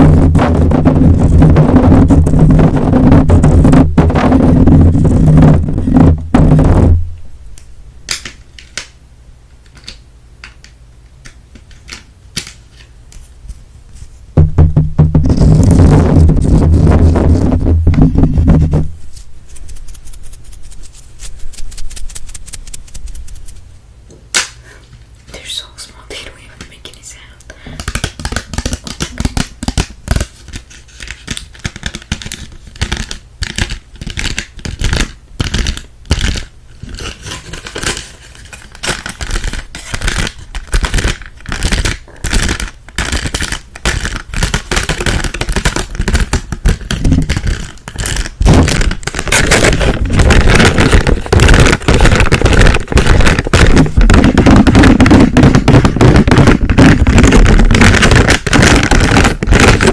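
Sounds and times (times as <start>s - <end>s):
scratching and rubbing: 0.0s - 7.0s, 15.0s - 23.7s, 25.3s - 59.9s
crisp taps and clicks: 39.1s - 59.9s.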